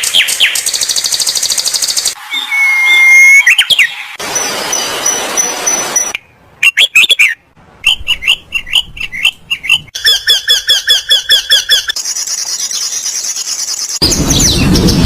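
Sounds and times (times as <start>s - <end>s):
sharp bird calls: 6.6s - 15.0s.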